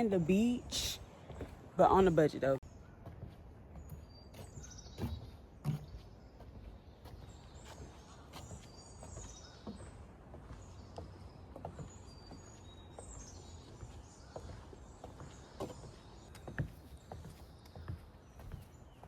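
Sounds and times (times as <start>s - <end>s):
songbirds chirping: 0.0s - 19.0s.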